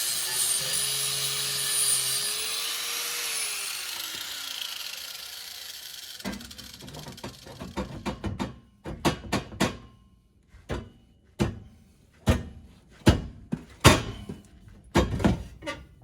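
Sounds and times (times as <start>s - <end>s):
exhaust pipe being banged: 12.3s - 14.3s.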